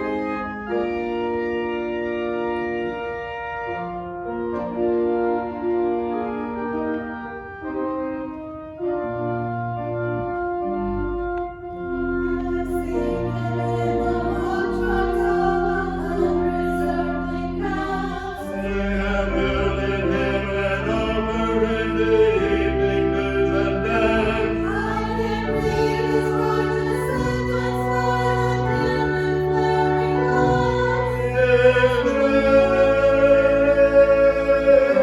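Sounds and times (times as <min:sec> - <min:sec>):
organ chords: 0:00.0 - 0:35.0
voices singing a hymn: 0:12.2 - 0:35.0.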